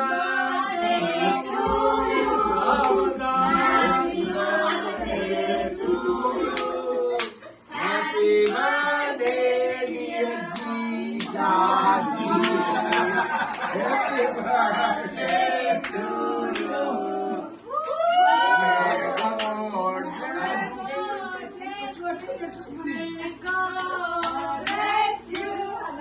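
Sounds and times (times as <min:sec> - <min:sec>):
group singing unaccompanied: 0:00.0 - 0:17.7, 0:22.8 - 0:26.0
hand claps: 0:06.5 - 0:07.4, 0:23.4 - 0:25.6.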